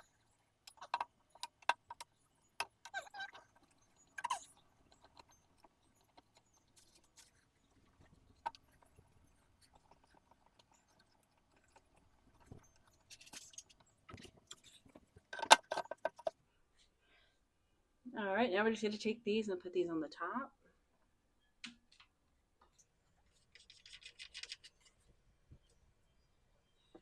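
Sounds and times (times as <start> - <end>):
clinks and rattles of hardware: 12.4 - 16.4.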